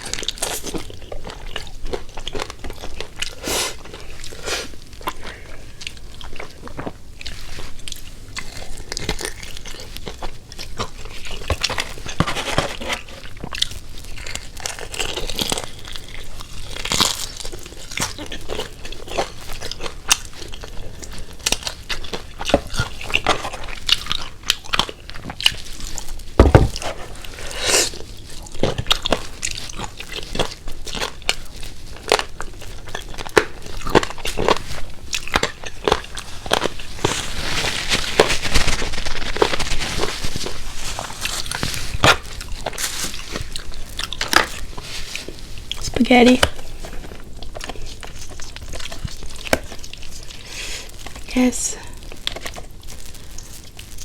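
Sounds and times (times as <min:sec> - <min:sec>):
crunching and chewing fried chicken: 0:00.0 - 0:54.0
low thud: 0:26.4 - 0:26.8.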